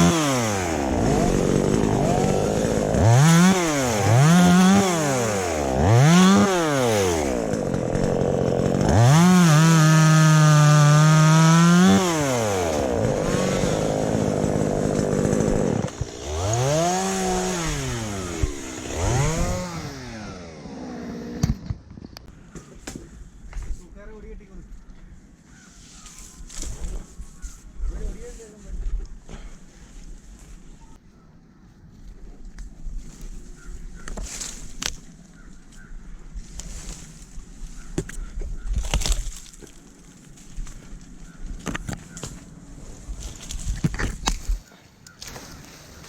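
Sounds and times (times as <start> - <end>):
chainsaw revving: 0.0 - 21.6.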